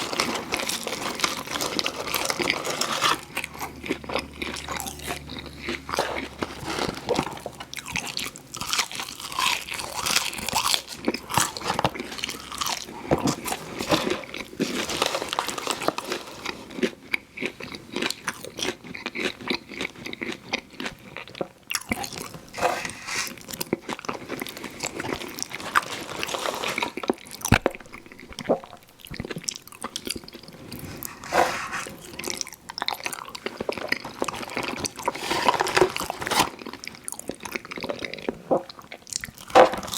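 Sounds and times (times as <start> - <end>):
wet chewing: 0.0 - 14.8
crunchy food crunching: 0.0 - 39.9.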